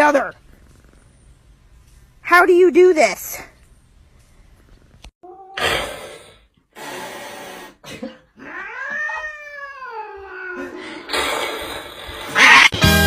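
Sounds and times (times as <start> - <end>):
cat meowing: 8.4 - 10.8.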